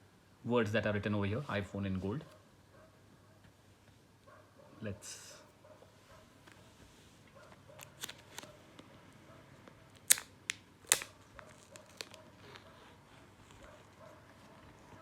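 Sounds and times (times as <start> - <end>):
plastic shrink wrap tearing: 7.8 - 8.6, 9.9 - 13.7.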